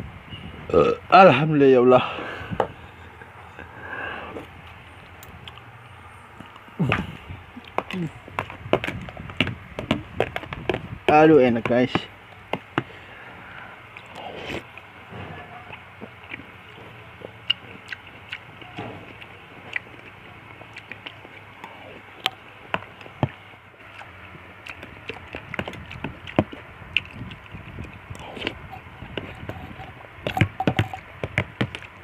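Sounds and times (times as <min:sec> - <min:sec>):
close chewing wet clicks: 0:04.6 - 0:05.8, 0:06.4 - 0:10.8, 0:13.9 - 0:14.9, 0:15.6 - 0:32.0.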